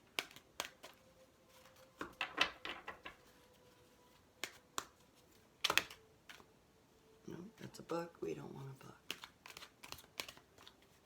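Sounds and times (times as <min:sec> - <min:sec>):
cards snapping: 0:00.0 - 0:01.0, 0:04.1 - 0:06.5, 0:09.0 - 0:11.0
cards clattering while shuffled: 0:00.0 - 0:06.5, 0:09.0 - 0:11.0.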